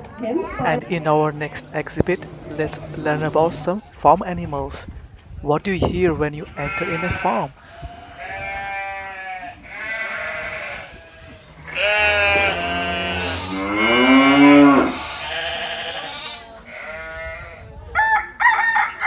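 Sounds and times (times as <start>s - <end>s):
farm animals bleating: 5.8s - 18.2s
rooster crowing: 18.0s - 19.0s.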